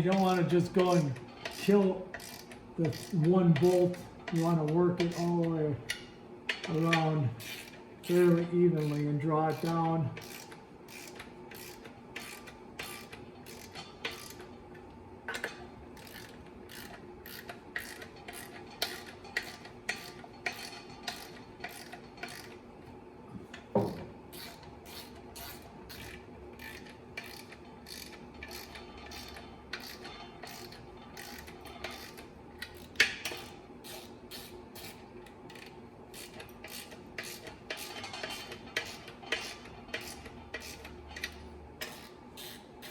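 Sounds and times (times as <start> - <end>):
hand ratchet clicking: 0.0 - 14.6, 15.3 - 22.6, 24.3 - 42.9
tool knocks: 23.7 - 24.2.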